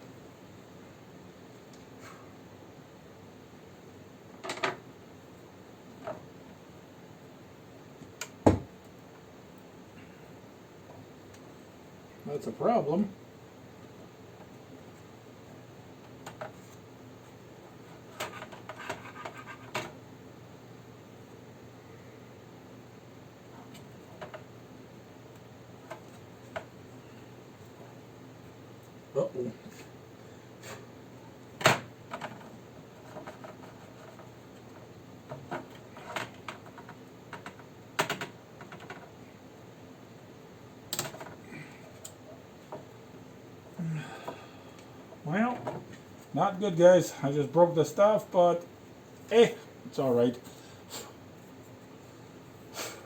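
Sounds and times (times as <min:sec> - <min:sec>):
steady low hum: 0:00.0 - 0:53.0
small clicks and scratches: 0:16.0 - 0:16.9, 0:17.7 - 0:20.0, 0:25.3 - 0:26.8, 0:32.1 - 0:39.2.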